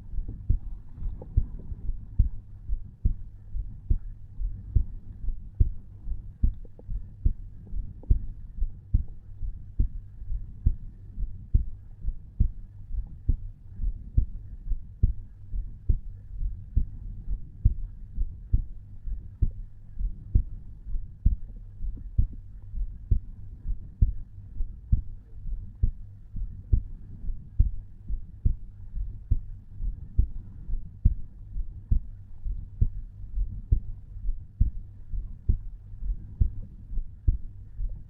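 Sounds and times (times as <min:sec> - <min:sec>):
heartbeat lub-dub thumps: 0:00.0 - 0:38.0
low steady hum: 0:00.0 - 0:38.0.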